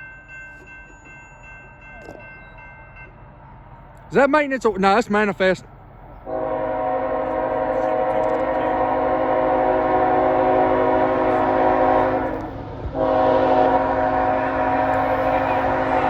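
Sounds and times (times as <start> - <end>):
locomotive air horn blast: 6.3 - 16.0.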